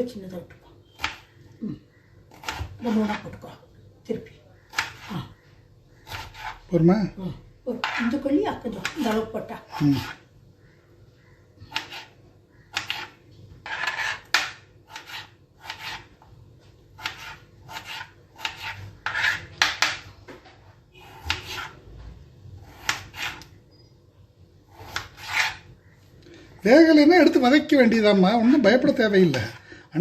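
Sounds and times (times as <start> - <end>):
knife cutting potato on board: 0.9 - 1.3, 2.3 - 3.4, 4.7 - 5.3, 6.0 - 6.7, 7.7 - 10.2, 11.6 - 16.3, 17.0 - 21.8, 22.6 - 23.6, 24.7 - 25.7.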